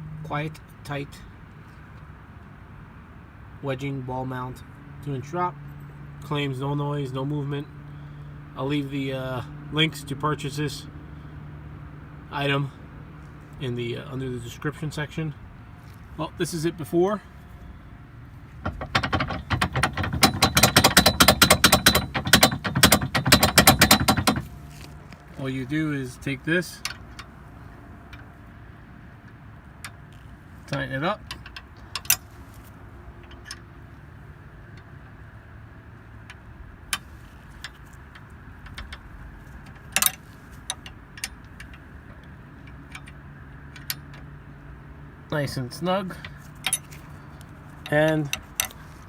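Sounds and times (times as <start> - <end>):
metal hitch rattling: 15.8 - 28.4, 29.7 - 34.1, 36.8 - 44.3, 46.1 - 49.0
metal knock: 18.6 - 24.5
metal tool clicks and clinks: 46.6 - 47.1.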